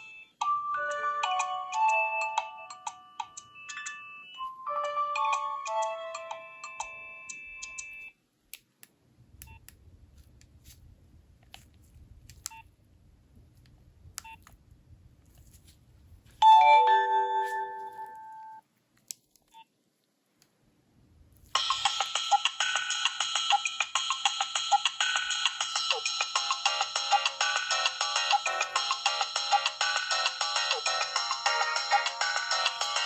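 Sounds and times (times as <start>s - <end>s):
phone ringtone melody: 0.0s - 8.1s, 16.4s - 18.6s, 21.6s - 33.0s.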